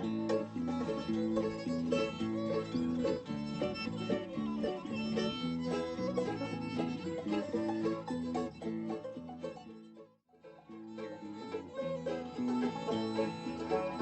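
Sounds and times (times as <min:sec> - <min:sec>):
banjo picking: 0:00.0 - 0:14.0
guitar picking: 0:00.0 - 0:14.0.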